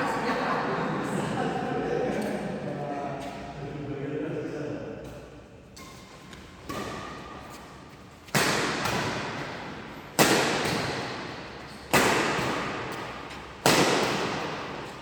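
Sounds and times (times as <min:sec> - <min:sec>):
rackets hitting shuttlecock: 0:05.8 - 0:15.0.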